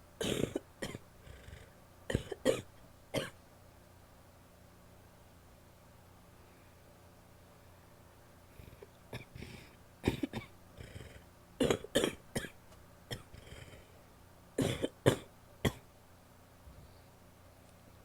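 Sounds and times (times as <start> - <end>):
woman coughing wetly: 0.2 - 1.0, 2.1 - 3.4, 9.1 - 10.5, 11.6 - 13.6, 14.6 - 15.8
quiet breaths: 1.1 - 1.9, 6.2 - 9.9, 10.7 - 11.4, 13.3 - 14.2, 16.6 - 18.0.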